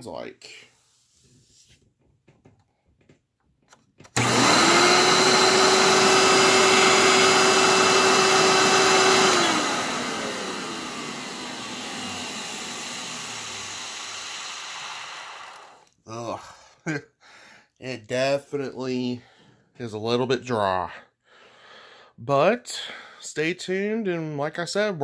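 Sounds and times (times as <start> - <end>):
vacuum cleaner motor whining: 4.1 - 15.9.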